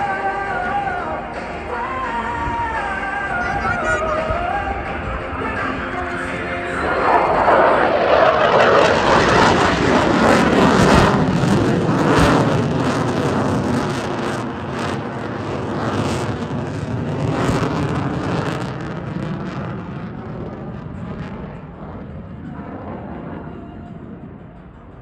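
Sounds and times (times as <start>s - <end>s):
jet engines rumbling: 0.0s - 25.0s.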